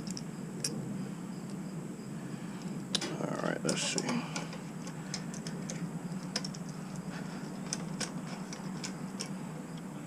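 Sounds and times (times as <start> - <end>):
small parts clicking and tapping: 0.0 - 0.8, 2.6 - 9.9
steady low hum: 0.0 - 10.0.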